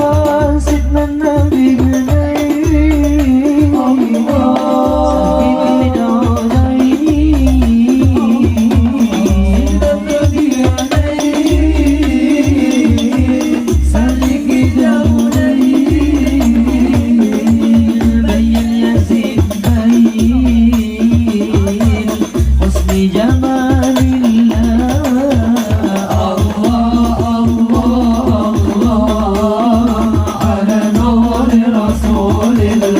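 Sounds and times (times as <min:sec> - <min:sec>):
frame drums and bass drum: 0:00.0 - 0:32.9.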